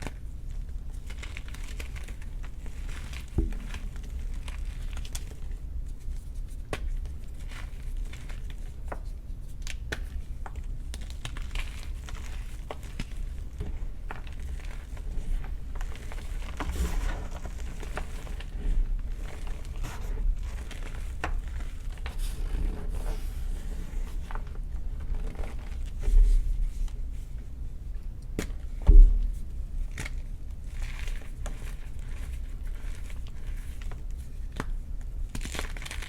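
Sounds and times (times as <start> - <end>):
chalk crunching by hand: 11.4 - 24.1.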